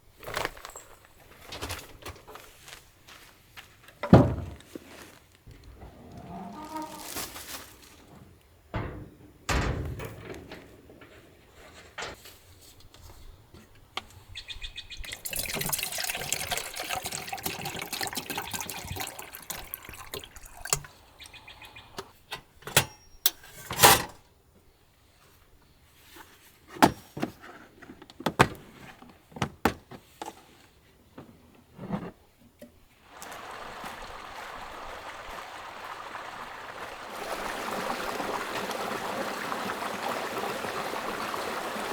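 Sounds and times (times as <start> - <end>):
knocks and clunks of handling: 3.9 - 4.8, 5.5 - 14.1, 26.7 - 32.8
water pouring and splashing: 5.6 - 8.2, 15.0 - 21.0, 33.0 - 41.9
running water rushing: 15.0 - 21.0, 33.0 - 41.9.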